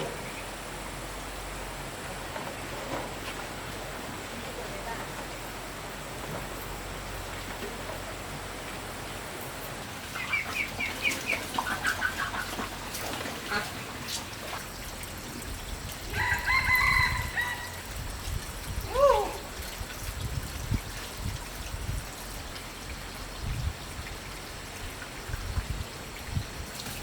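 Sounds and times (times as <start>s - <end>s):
chickens calling: 10.0s - 14.1s, 16.1s - 18.0s
chicken clucking: 10.2s - 12.8s
rooster crowing: 16.1s - 17.9s.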